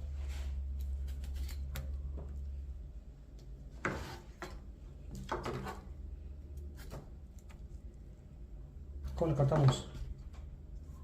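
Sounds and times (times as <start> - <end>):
steady low hum: 0.0 - 11.0
knife cutting pineapple: 0.7 - 2.1.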